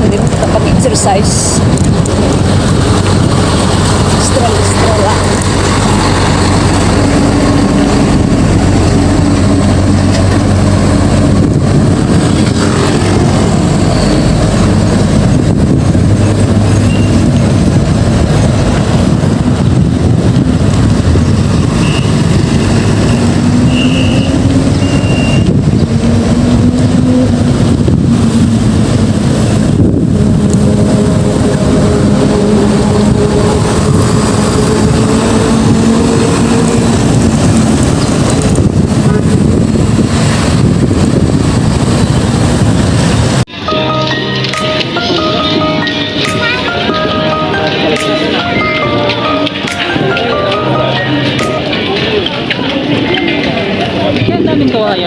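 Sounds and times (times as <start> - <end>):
traffic rush: 0.0 - 55.0
vehicles passing: 0.0 - 55.0.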